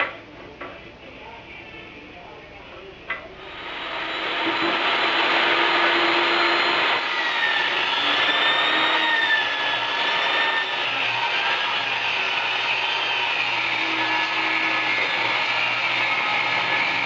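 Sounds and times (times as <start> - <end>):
power tool motor whine: 3.4 - 17.0.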